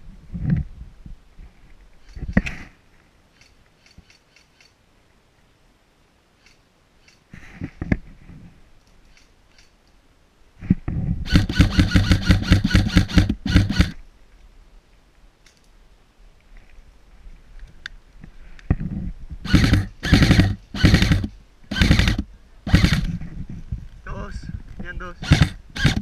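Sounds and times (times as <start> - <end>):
airsoft gun shots: 11.3 - 14.0, 19.4 - 23.0, 25.2 - 26.0.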